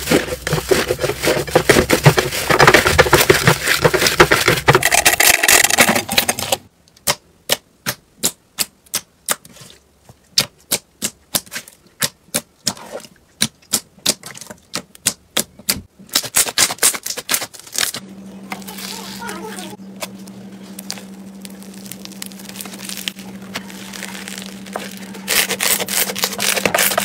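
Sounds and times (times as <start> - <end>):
slime crackling crunch: 16.1 - 27.0.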